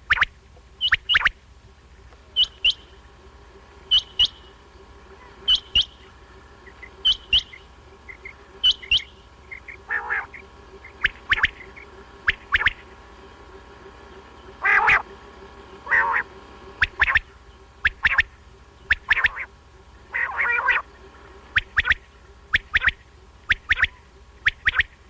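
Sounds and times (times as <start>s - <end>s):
quail calling: 0.0s - 1.4s, 2.2s - 3.1s, 3.9s - 12.9s, 14.4s - 15.1s, 15.8s - 25.0s
rough low bird call: 3.8s - 13.4s.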